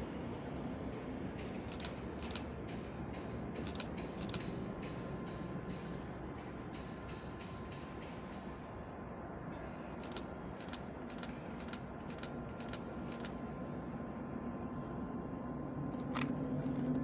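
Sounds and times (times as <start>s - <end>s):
diesel locomotive engine hum: 0.0s - 17.0s
train wheels clicking over rail joints: 0.9s - 8.8s, 9.5s - 13.4s.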